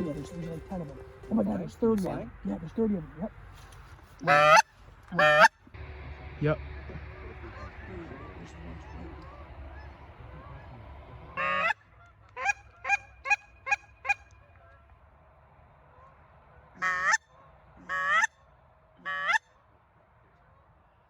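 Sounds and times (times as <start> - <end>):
geese clucking: 0.0 - 14.9, 15.8 - 18.4, 19.0 - 19.5
geese honking: 0.0 - 15.0, 15.8 - 18.4, 19.0 - 19.6.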